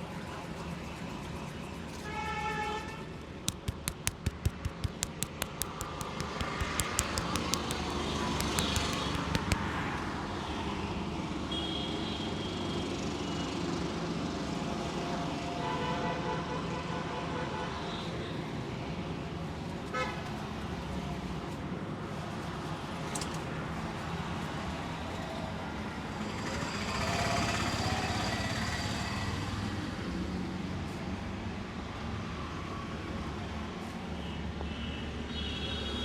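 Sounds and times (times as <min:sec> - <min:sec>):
hands slapping on head: 0:03.5 - 0:09.7.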